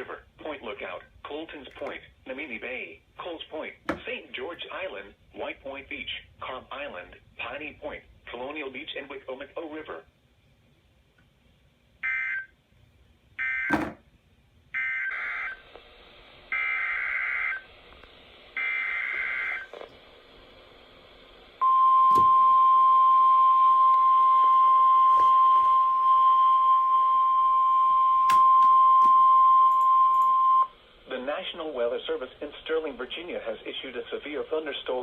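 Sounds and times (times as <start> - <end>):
faint radio hiss: 0.0 - 22.5, 30.5 - 35.0
steady warning alarm tone: 13.4 - 13.9, 14.8 - 15.6, 16.5 - 17.7, 18.6 - 19.7, 21.6 - 30.8.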